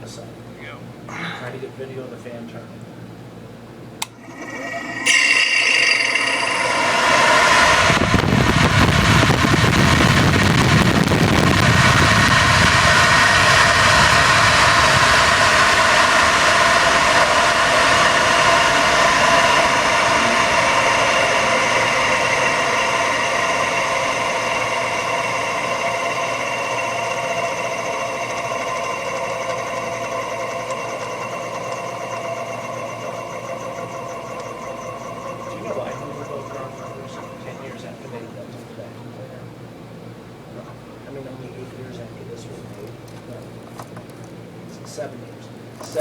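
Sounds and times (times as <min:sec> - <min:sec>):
vacuum cleaner motor whine: 0:04.0 - 0:38.4
heavy low rumble: 0:06.6 - 0:22.4.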